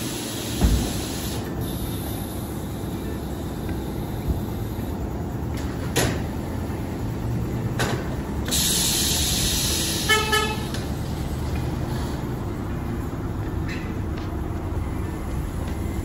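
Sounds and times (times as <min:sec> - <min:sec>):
hiss: 0:00.0 - 0:05.0, 0:08.4 - 0:10.7
low rumble of vehicles: 0:00.0 - 0:16.0
shop noise: 0:00.0 - 0:16.0
car horn toot: 0:10.0 - 0:10.7.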